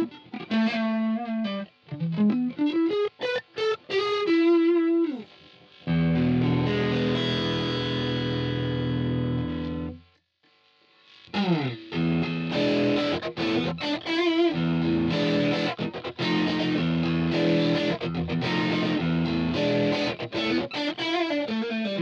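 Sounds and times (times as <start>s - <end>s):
distorted electric guitar chords: 0.0s - 10.2s, 11.2s - 22.0s
guitar slide: 5.9s - 10.0s, 11.3s - 22.0s.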